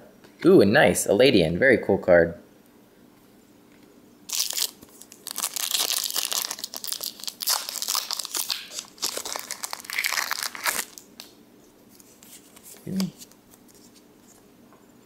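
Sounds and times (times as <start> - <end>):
foil wrapper tearing and crinkling: 4.3 - 11.1.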